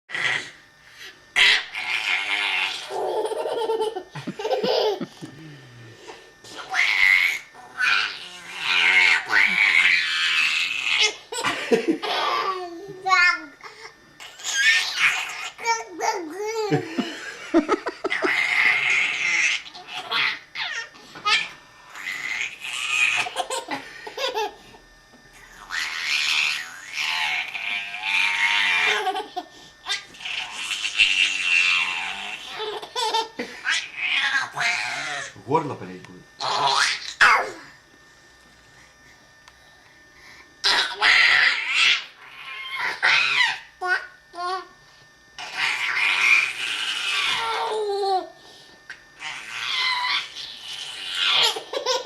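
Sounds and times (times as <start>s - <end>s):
baby laughing and squealing: 1.4s - 5.1s, 10.9s - 12.7s, 17.5s - 24.6s, 28.0s - 35.3s, 51.1s - 52.0s
baby girl laughing: 2.8s - 5.3s, 23.2s - 24.6s, 32.5s - 33.5s, 51.3s - 52.0s.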